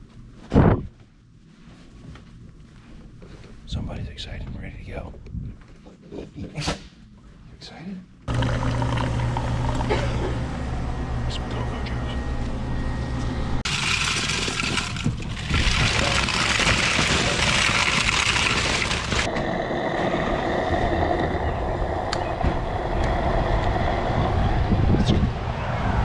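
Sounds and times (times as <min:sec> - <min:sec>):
vehicle low rumble: 0:19.2 - 0:26.0.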